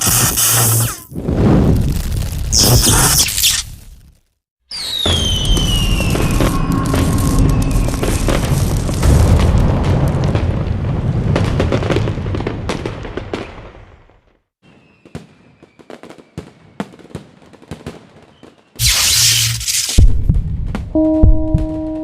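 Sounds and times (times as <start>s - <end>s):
rumbling explosion: 1.1s - 3.2s, 4.9s - 14.1s.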